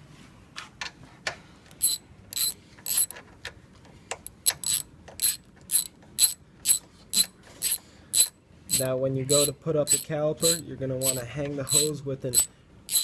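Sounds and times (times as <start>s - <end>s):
ratchet clicking: 1.8s - 3.1s, 4.3s - 13.0s.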